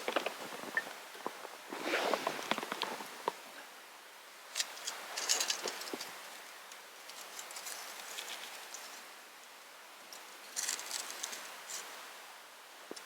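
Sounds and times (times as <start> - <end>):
wood campfire crackling: 0.0 - 3.6
soft hiss of fire: 0.0 - 13.0.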